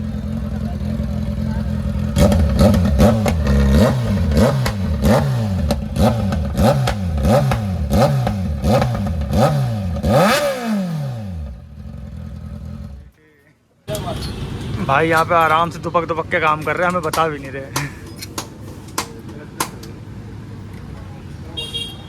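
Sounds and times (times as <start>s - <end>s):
motorcycle engine revving: 0.0s - 13.1s
exhaust pops: 1.9s - 10.3s.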